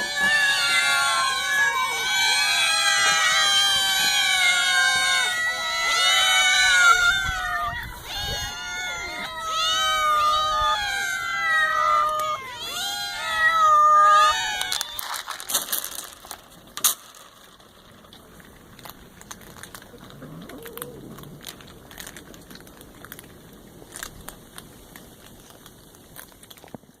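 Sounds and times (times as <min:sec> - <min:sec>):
cats meowing: 0:00.0 - 0:16.4, 0:18.8 - 0:23.3.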